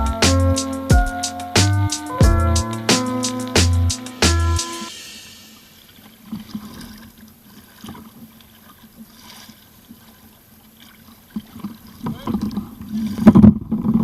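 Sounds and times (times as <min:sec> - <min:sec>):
water splashing around kayak hull: 0:05.8 - 0:14.0.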